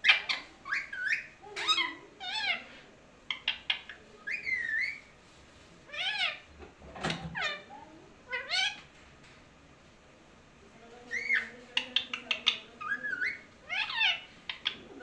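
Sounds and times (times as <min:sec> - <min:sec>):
parrot calling: 0:00.0 - 0:05.1, 0:05.9 - 0:06.5, 0:07.3 - 0:08.9, 0:11.1 - 0:15.0.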